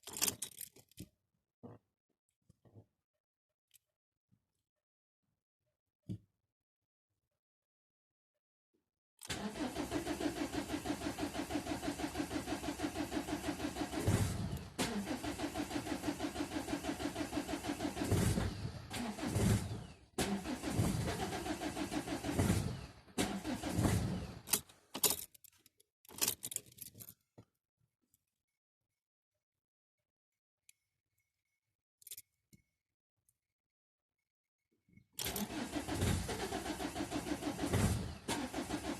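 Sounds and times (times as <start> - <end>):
starter cranking diesel engine: 9.2 - 24.7, 35.2 - 38.9.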